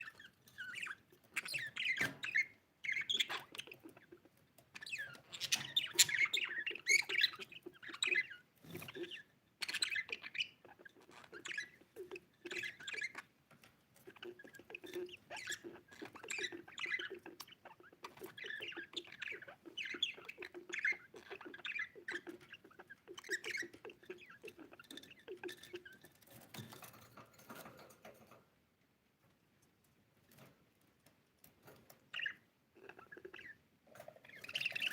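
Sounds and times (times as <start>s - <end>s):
budgerigar chattering and chirping: 0.0s - 13.3s, 14.0s - 26.0s, 32.1s - 33.6s, 34.2s - 34.9s.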